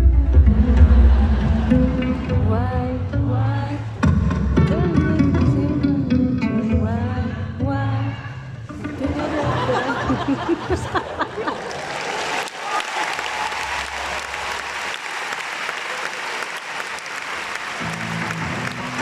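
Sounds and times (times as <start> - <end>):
cellos playing: 0.0 - 8.0, 8.6 - 11.2
audience applauding: 9.7 - 19.0.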